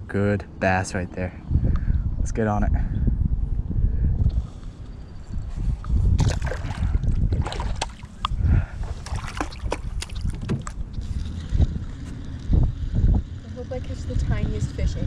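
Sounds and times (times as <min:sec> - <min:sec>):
wind rumble on microphone: 0:00.0 - 0:15.0
knocks and clatter in boat: 0:06.2 - 0:11.7.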